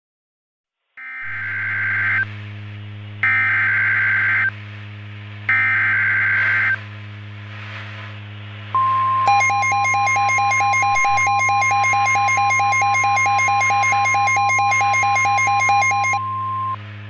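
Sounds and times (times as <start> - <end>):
steady low hum: 1.2 - 17.0
warbling digital data tones: 9.2 - 16.8.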